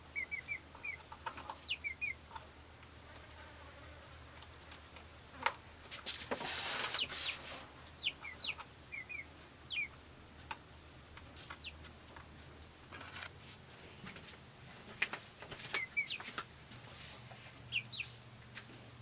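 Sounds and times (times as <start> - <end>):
bird chirping: 0.0 - 2.2, 6.9 - 7.4, 8.0 - 10.0, 11.4 - 11.8, 15.7 - 16.3, 17.7 - 18.2.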